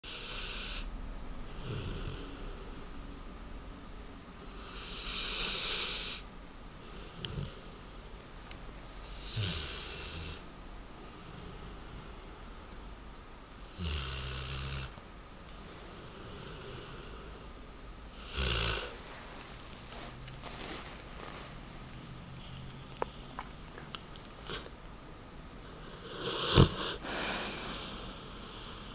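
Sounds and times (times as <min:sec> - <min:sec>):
dog snoring: 0:00.0 - 0:03.2, 0:04.4 - 0:06.2, 0:06.8 - 0:07.9, 0:09.0 - 0:10.4, 0:11.0 - 0:12.6, 0:13.6 - 0:19.0, 0:25.7 - 0:28.9.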